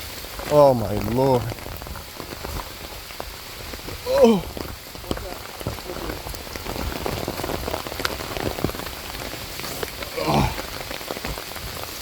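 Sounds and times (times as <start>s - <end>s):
rain falling on an umbrella: 0.0s - 12.0s
person grunting with effort: 4.0s - 4.6s, 10.1s - 10.7s.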